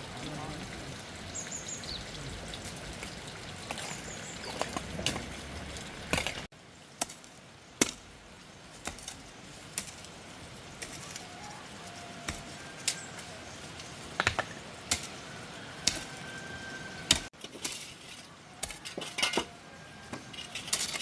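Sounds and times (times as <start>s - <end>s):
scraping in soil: 1.6s - 7.4s, 8.8s - 14.2s, 14.8s - 19.4s, 20.1s - 21.0s
digging tool striking earth: 7.0s - 8.1s, 15.8s - 16.1s.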